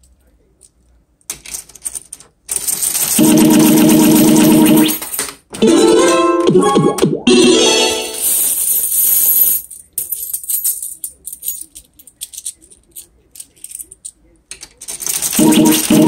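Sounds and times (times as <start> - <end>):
slot machine music: 3.2 - 5.0, 5.6 - 8.4, 15.3 - 16.0.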